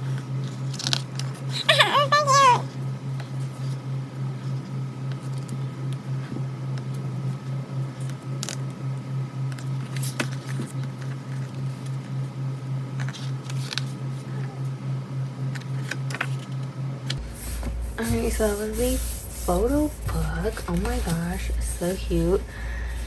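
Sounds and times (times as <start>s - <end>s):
pulsing low hum: 16.6s - 23.0s.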